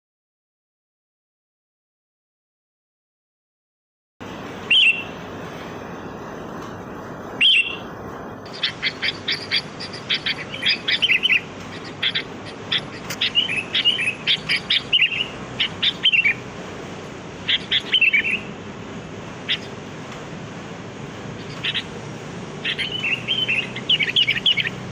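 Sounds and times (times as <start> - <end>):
bird calls and chirps: 4.7 - 5.2, 7.4 - 7.9, 8.5 - 16.6, 17.4 - 18.6, 19.4 - 19.9, 21.3 - 24.9.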